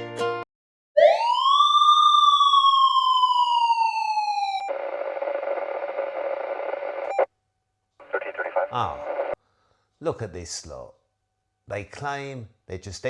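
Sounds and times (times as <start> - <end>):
siren wail: 1.0 - 7.3
tinny static: 4.7 - 7.3, 8.0 - 9.4.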